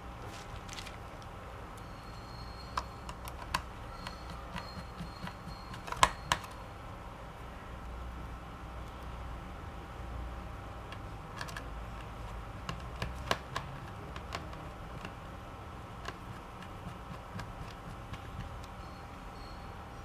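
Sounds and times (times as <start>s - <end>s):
laptop parts clicking and tapping: 2.2s - 6.7s, 10.8s - 19.1s.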